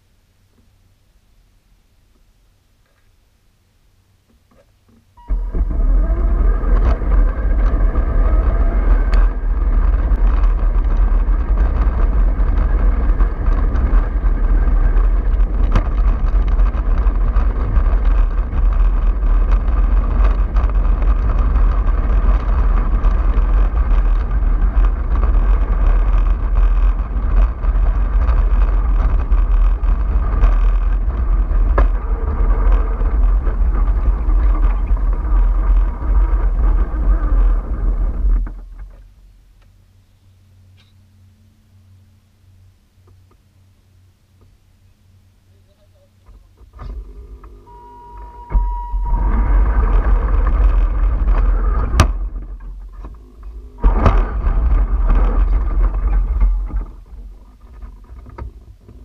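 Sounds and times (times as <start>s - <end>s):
bus engine rumble: 5.2s - 59.0s
wind buffeting microphone: 5.3s - 39.0s, 46.6s - 59.0s.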